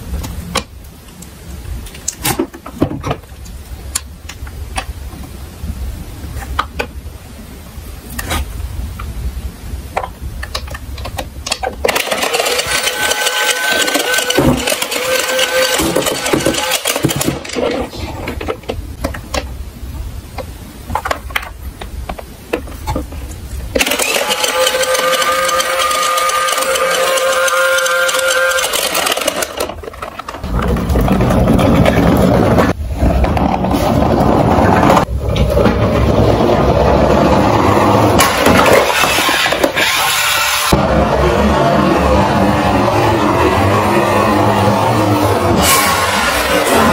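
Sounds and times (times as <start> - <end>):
toy cars rolling down a slope: 10.5 - 19.5, 23.8 - 40.8.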